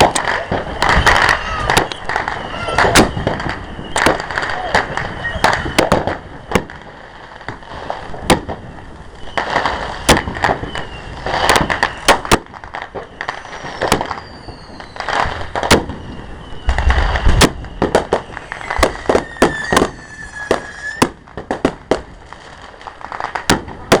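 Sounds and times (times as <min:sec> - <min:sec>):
fireworks bangs and crackles: 0:00.0 - 0:24.0
whistling firework shells: 0:00.0 - 0:24.0.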